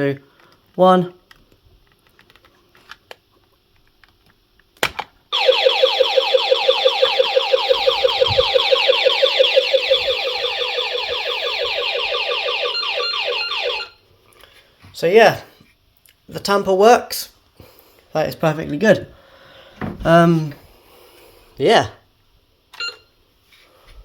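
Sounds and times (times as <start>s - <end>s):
warbling alarm tone: 5.3s - 14.0s.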